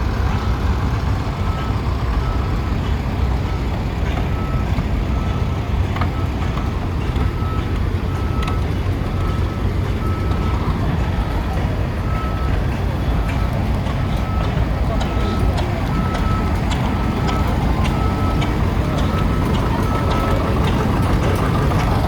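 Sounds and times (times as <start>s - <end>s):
tractor engines rumbling: 0.0s - 22.0s.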